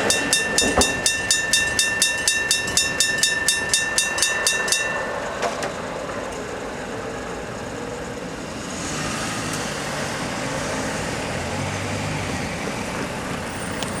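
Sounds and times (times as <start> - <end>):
rolling noise: 0.0 - 8.6
vehicle engine running: 5.2 - 14.0.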